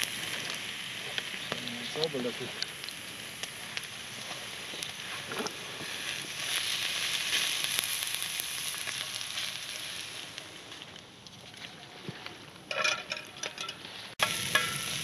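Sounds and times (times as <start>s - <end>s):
food sizzling in a frying pan: 0.0s - 10.7s, 14.1s - 15.0s.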